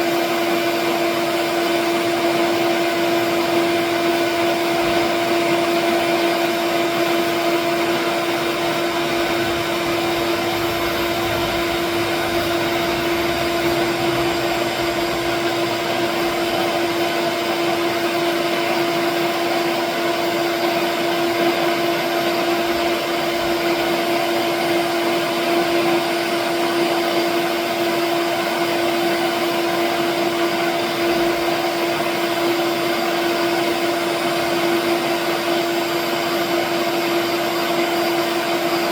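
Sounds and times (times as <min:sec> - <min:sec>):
vacuum whining: 0:00.0 - 0:38.9.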